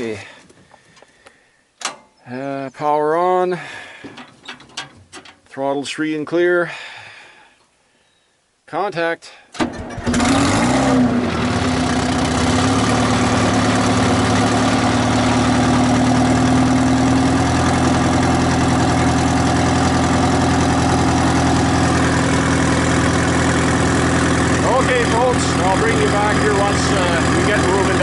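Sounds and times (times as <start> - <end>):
diesel engine idling: 10.3 - 28.0.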